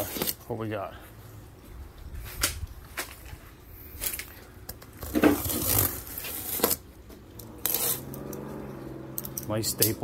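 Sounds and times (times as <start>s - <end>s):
cardboard and tape tearing: 0.0s - 0.5s, 4.9s - 8.4s.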